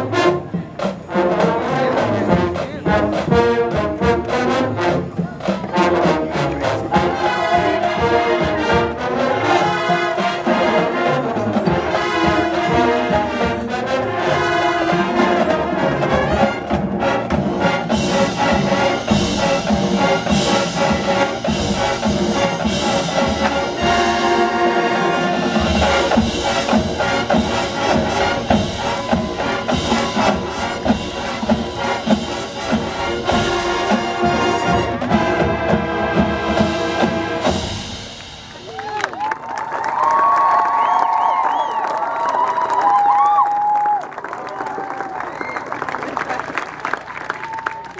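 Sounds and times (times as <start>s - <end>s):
marching band brass music: 0.0s - 39.4s.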